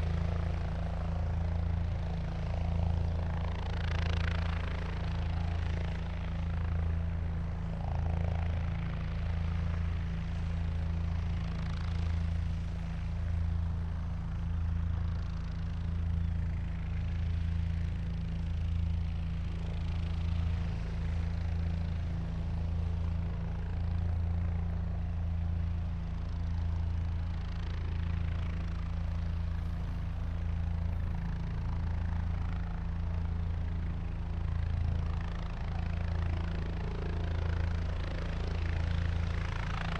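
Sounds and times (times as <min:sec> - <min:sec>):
helicopter engine and rotor: 0:00.0 - 0:39.9.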